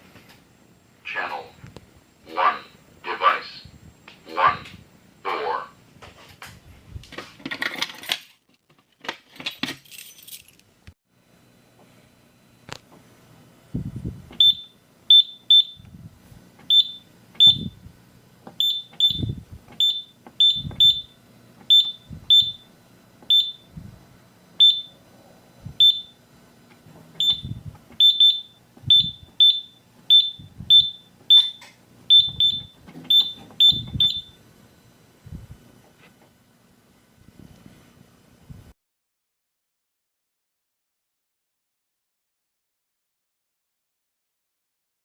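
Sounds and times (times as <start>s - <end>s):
keypad beeps: 14.4s - 15.8s, 16.6s - 17.8s, 18.6s - 22.7s, 23.3s - 23.7s, 24.6s - 25.0s, 25.8s - 26.2s, 27.2s - 34.4s.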